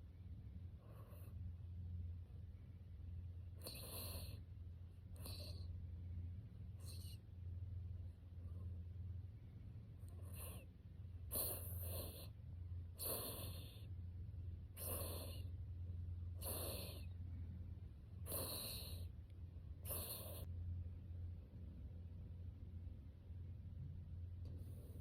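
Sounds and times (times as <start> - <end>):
puppy snoring: 0.0 - 6.0, 6.6 - 7.4, 9.9 - 17.2, 18.1 - 20.5.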